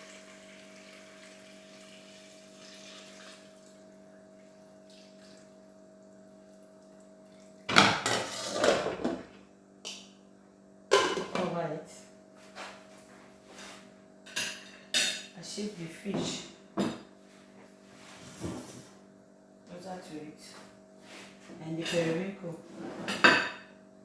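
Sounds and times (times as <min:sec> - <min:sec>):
liquid pouring into pot: 0:00.0 - 0:03.9
metal pot and lid clattering: 0:10.9 - 0:11.4.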